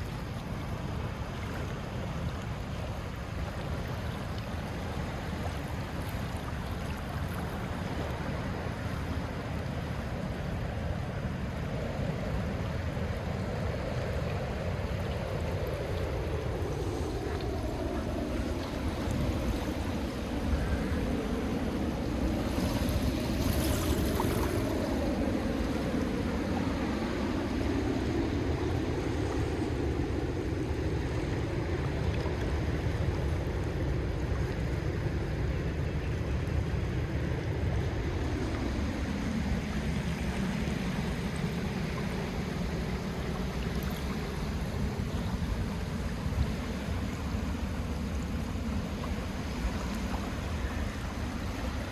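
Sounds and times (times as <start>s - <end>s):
sea waves washing onto shell beach: 37.0s - 51.9s.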